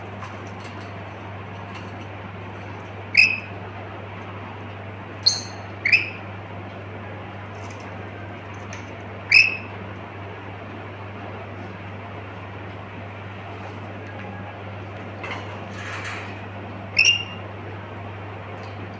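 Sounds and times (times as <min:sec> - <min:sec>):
steady low hum: 0:00.0 - 0:18.9
parrot calls: 0:05.2 - 0:06.2, 0:09.3 - 0:09.7, 0:17.0 - 0:17.4.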